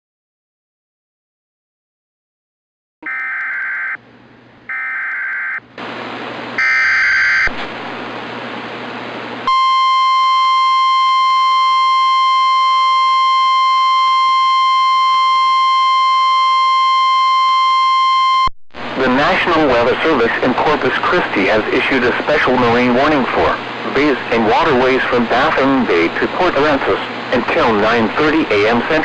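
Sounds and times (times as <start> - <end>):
steady warning alarm tone: 3.0 - 4.0, 4.7 - 5.6, 6.6 - 7.5, 9.5 - 18.5
screeching digital header bursts: 6.6 - 7.5.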